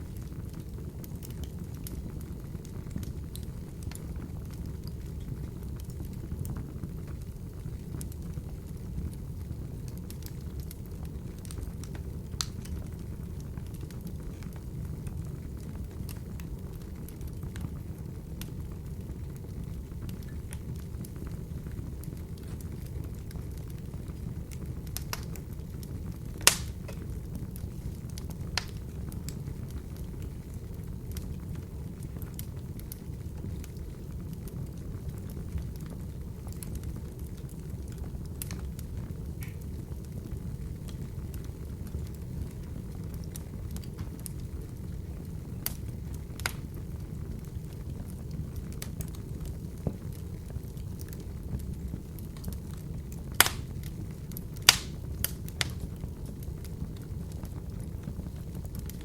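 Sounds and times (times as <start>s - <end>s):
fire crackling and popping: 0.0s - 59.0s
flames rushing: 0.0s - 59.0s
loud sharp pop of fire: 26.4s - 27.2s, 53.3s - 53.8s, 54.6s - 55.9s.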